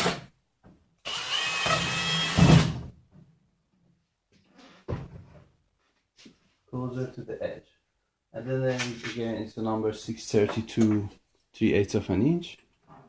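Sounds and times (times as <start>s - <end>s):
power drill whirring: 1.0s - 2.8s.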